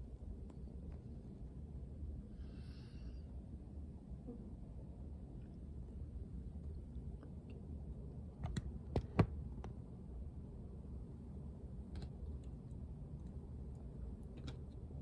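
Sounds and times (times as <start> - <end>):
low steady rumble: 0.0 - 15.0.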